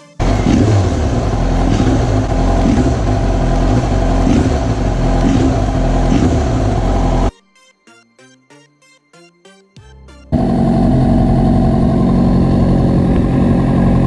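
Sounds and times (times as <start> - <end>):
motorcycle engine misfiring: 0.2 - 7.3.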